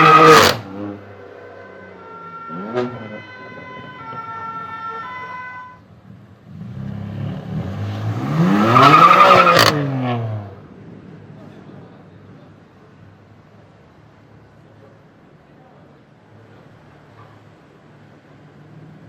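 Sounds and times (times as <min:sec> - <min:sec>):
siren-like tone changing pitch: 0:01.6 - 0:05.4
exhaust crack: 0:07.6 - 0:10.4.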